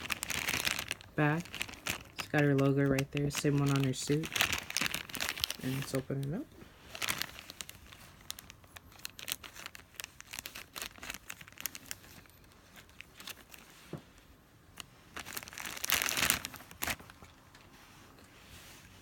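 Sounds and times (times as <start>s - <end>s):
plastic bag crinkling: 0.0s - 13.9s, 14.8s - 17.7s.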